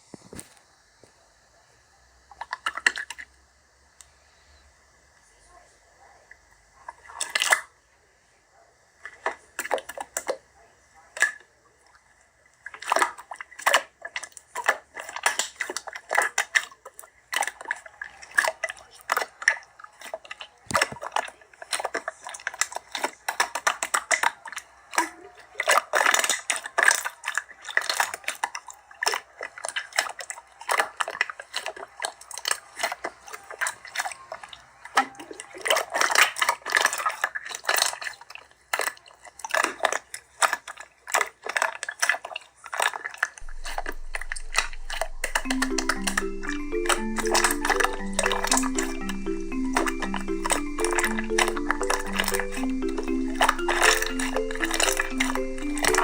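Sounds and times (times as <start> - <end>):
crisp clicking and crunching: 12.7 - 56.0.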